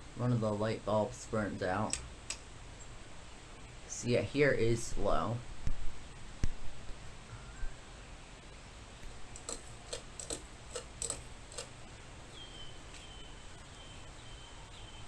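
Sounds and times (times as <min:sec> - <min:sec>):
light uneven ticks: 0:09.3 - 0:11.7.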